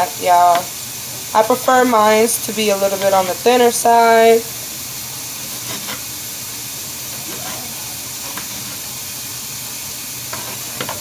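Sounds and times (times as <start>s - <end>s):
food sizzling: 0.0s - 11.0s.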